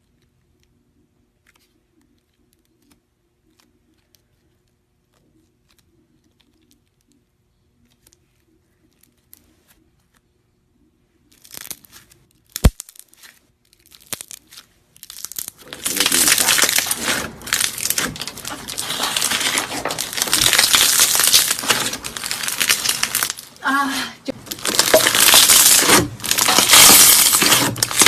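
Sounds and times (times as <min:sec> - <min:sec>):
slime crackling and popping: 0:11.3 - 0:28.0.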